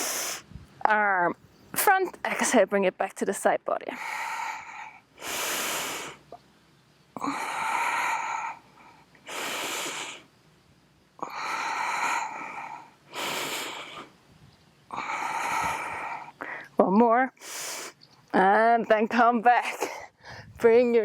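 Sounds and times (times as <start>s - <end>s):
person breathing deeply: 7.2s - 10.3s, 14.9s - 16.7s, 20.2s - 20.6s.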